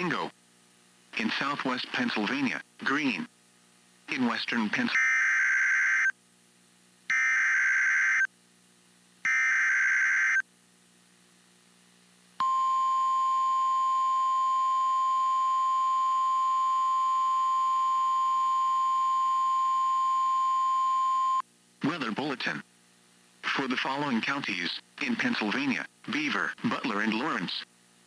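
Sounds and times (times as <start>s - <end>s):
steady alarm tone: 7.1s - 8.3s, 9.3s - 10.4s, 12.4s - 21.4s.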